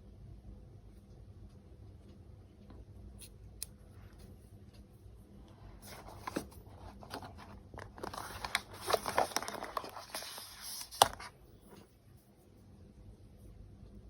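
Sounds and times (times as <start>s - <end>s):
packaging rustling: 5.8s - 11.3s.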